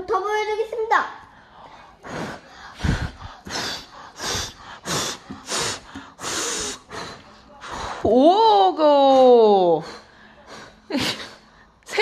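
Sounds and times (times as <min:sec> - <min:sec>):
child blowing breathy puffs: 0:01.8 - 0:08.0.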